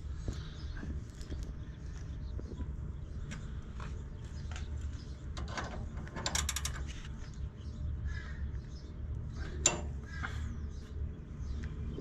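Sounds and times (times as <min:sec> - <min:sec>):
steady low hum: 0:00.0 - 0:12.0
ratchet wrench clicking: 0:06.2 - 0:06.8.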